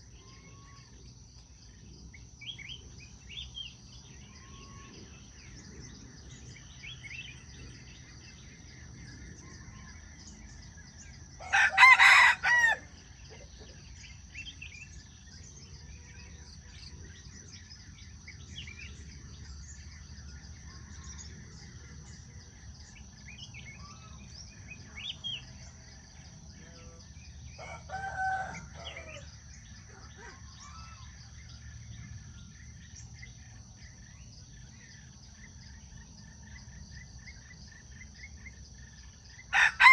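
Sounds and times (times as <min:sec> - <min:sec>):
high insect drone: 0:00.0 - 0:39.9
rooster crowing: 0:11.4 - 0:12.9, 0:27.5 - 0:29.3, 0:39.5 - 0:39.9.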